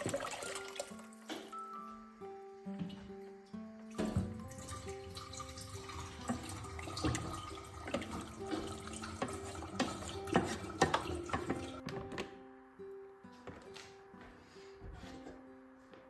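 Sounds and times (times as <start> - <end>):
tap running into sink: 4.0 - 11.9.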